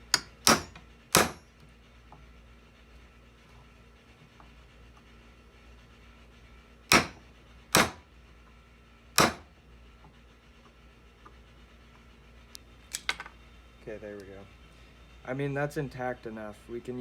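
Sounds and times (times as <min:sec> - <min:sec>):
hammer striking: 0:00.0 - 0:01.5, 0:06.9 - 0:08.0, 0:09.2 - 0:09.4.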